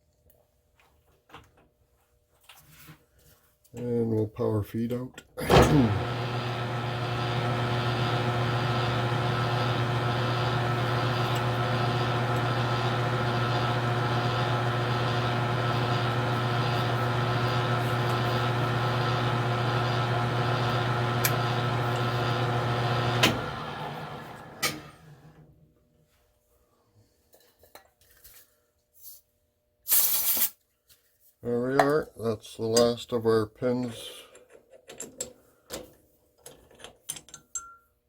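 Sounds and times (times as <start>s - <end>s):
metal lathe running: 5.5s - 25.0s
lathe switch click: 20.6s - 22.2s.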